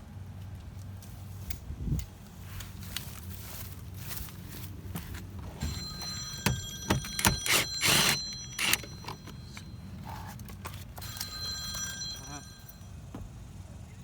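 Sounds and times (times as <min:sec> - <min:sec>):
faint steady high tone: 0:05.6 - 0:10.4, 0:11.0 - 0:13.2.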